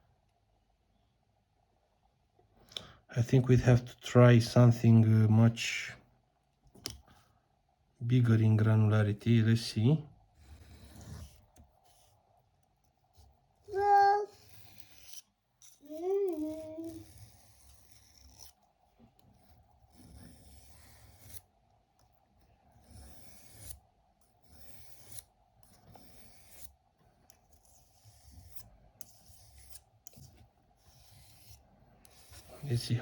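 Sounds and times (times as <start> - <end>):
knife blade rasping on whetstone: 14.4 - 18.6, 19.9 - 21.4, 22.8 - 23.8, 27.6 - 32.8.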